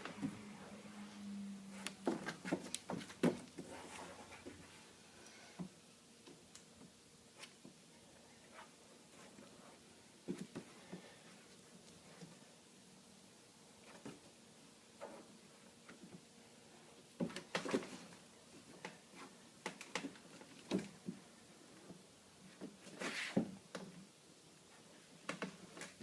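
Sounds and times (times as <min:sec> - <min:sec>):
low hum: 0:00.0 - 0:02.0.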